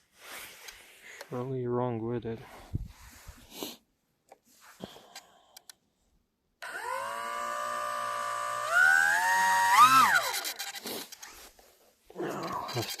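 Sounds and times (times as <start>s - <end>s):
electric motor and propeller whine: 6.6s - 10.6s.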